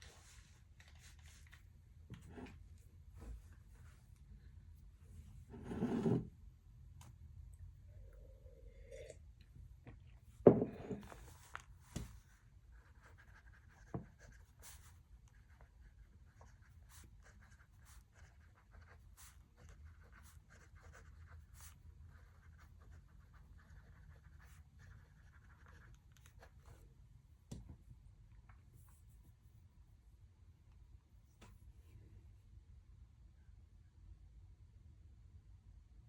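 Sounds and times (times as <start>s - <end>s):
pencil scratching on paper: 5.5s - 6.2s, 12.7s - 26.8s.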